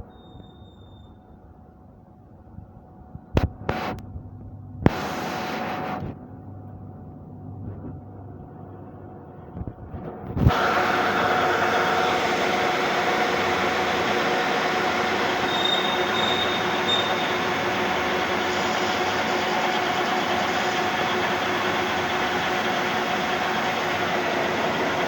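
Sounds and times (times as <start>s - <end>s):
metal lathe grinding hum: 10.5s - 25.0s.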